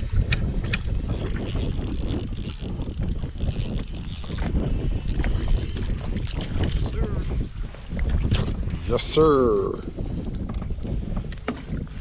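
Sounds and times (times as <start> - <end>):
fishing reel gears whining: 0.0 - 6.1
reel clicks: 0.0 - 6.9
wind buffeting microphone: 0.0 - 12.0.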